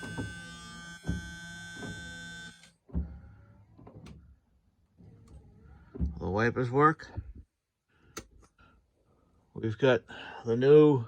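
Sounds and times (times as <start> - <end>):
wiper thumping: 0.0 - 4.3, 5.2 - 6.4
windshield wiper motor whining: 0.0 - 4.4.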